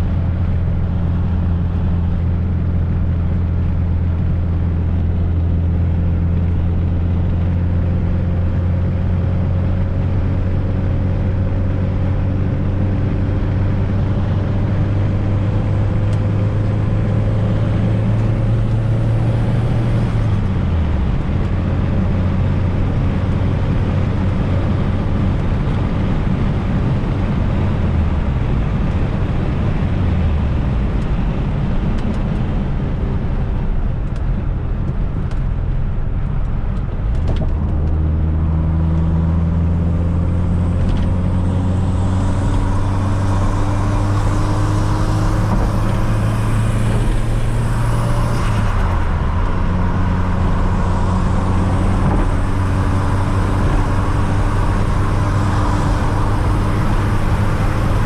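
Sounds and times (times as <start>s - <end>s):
car engine under way: 0.0s - 58.0s
road noise: 0.0s - 58.0s.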